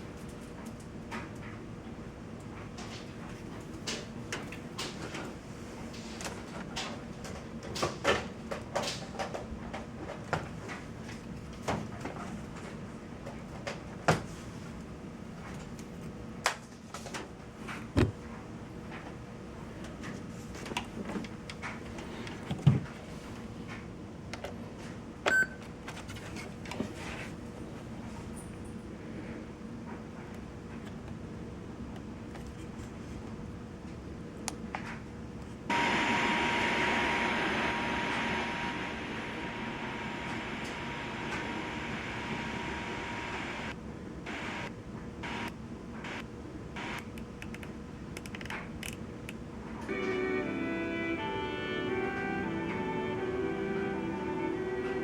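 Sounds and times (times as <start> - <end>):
radio static hiss: 38.8 - 46.2, 46.8 - 47.1.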